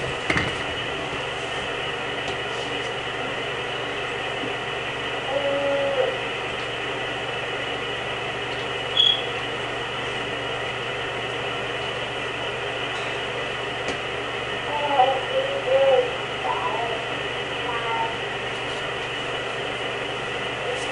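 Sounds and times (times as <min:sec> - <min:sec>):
brief high squeak: 0:09.0 - 0:09.3.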